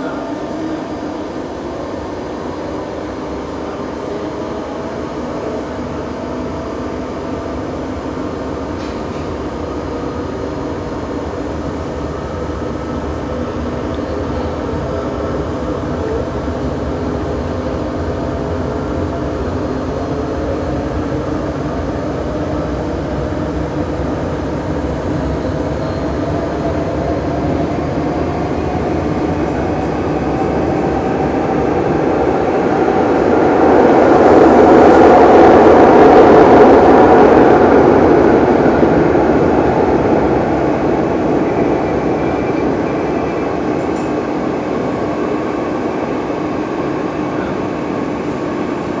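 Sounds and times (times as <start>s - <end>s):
electric commuter train running: 0.0s - 49.0s
train rushing noise: 0.0s - 49.0s.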